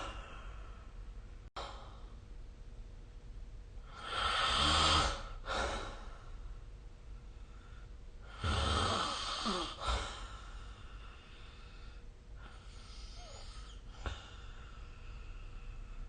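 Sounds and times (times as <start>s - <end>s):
loud low snore: 3.9s - 5.8s, 8.3s - 10.1s
faint breath: 5.4s - 8.4s, 9.4s - 16.0s.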